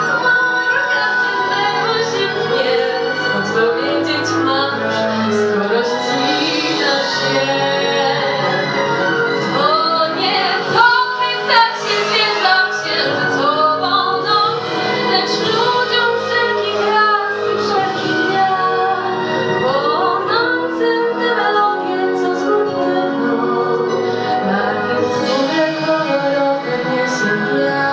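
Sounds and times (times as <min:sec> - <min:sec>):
woman singing: 0:00.0 - 0:27.9.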